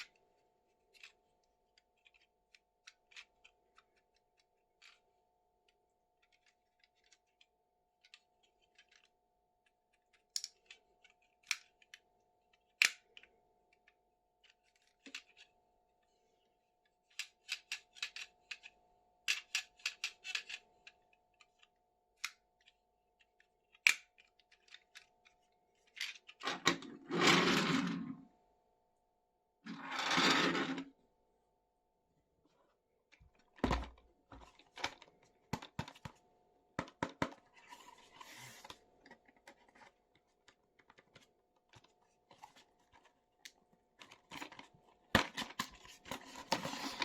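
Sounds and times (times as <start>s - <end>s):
plastic toy pieces clicking: 17.1s - 21.6s
rustling scrape: 37.6s - 38.8s, 46.2s - 47.0s.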